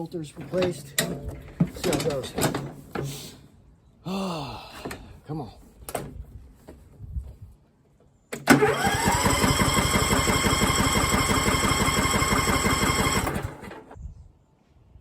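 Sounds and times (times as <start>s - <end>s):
electric starter cranking engine: 8.4s - 14.0s.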